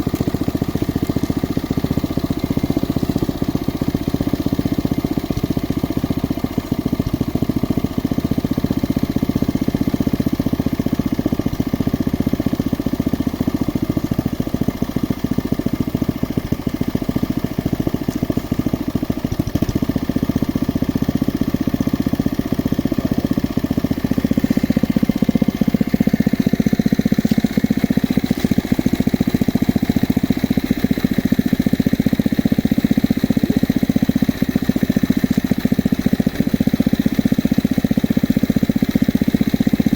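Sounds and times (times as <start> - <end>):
drilling rig engine pulsing: 16.3 - 39.9.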